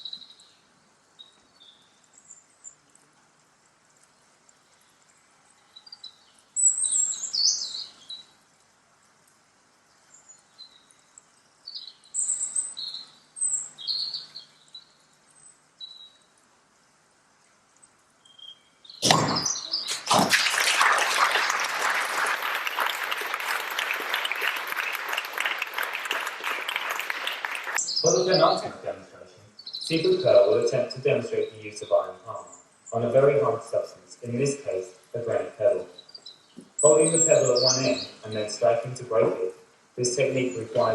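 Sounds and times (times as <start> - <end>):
birds chirping: 3.9 - 8.4, 9.8 - 16.2, 17.8 - 40.9
sharp impact: 19.0 - 20.6
loud dense steady noise: 19.0 - 35.9.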